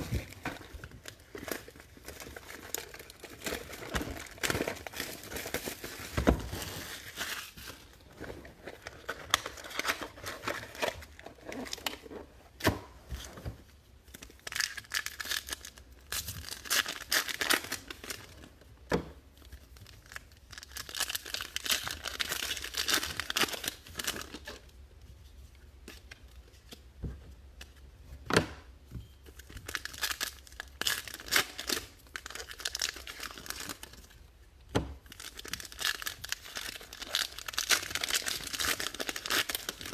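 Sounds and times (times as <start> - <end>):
card pack wrappers tearing: 35.1 - 39.9.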